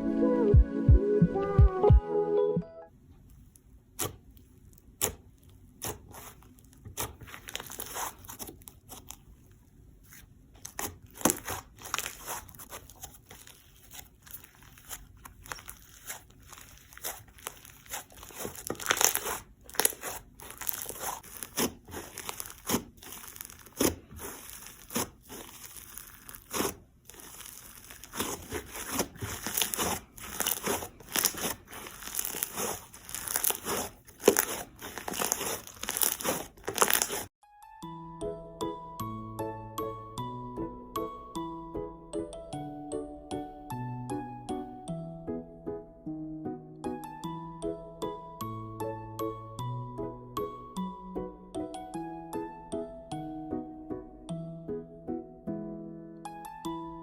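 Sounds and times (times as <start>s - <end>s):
slime crackling and popping: 4.0s - 9.3s, 10.6s - 37.3s.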